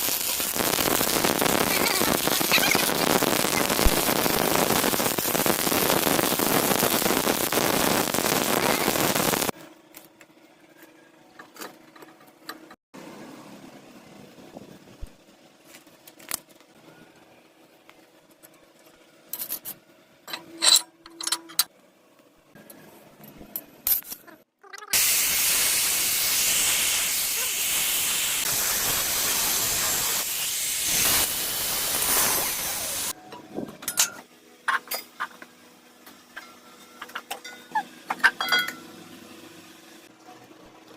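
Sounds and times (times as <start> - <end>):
welding arc hissing: 0.0 - 9.6, 24.9 - 33.2.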